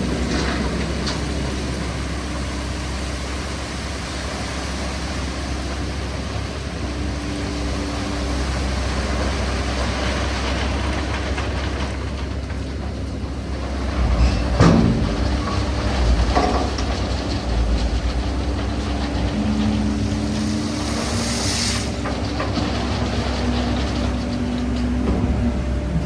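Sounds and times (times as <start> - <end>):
excavator diesel engine running: 0.0 - 26.0
hydraulics working: 13.3 - 26.0
metal clank: 13.8 - 22.8.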